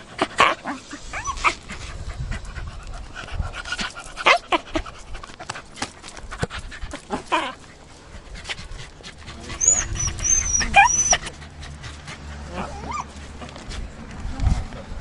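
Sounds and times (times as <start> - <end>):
dog whining and whimpering: 0.4 - 1.6, 9.3 - 11.3, 12.5 - 13.2
high-pitched dog squeals: 0.7 - 1.6, 9.4 - 11.3.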